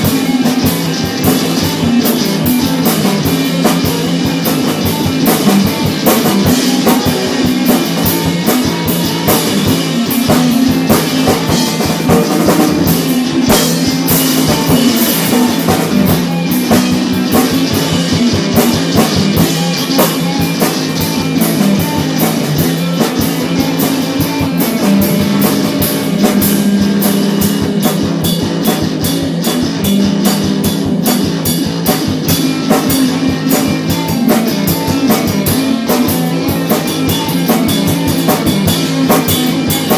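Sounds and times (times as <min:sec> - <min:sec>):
drum kit beat: 0:00.0 - 0:39.9
rock band playing: 0:00.0 - 0:39.9.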